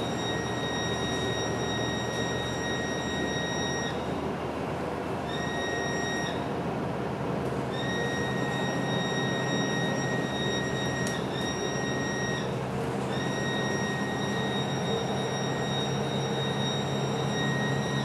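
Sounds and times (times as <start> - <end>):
bus running noise: 6.3 - 18.0.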